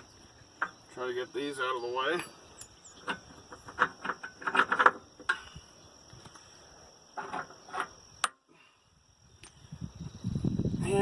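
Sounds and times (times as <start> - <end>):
metal clicks and knocks: 2.2 - 5.5.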